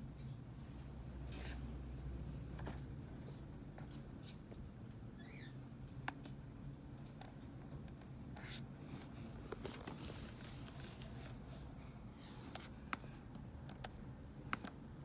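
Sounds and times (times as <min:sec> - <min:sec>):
steady low hum: 0:00.0 - 0:15.0
soft scratching rustles: 0:08.4 - 0:12.8.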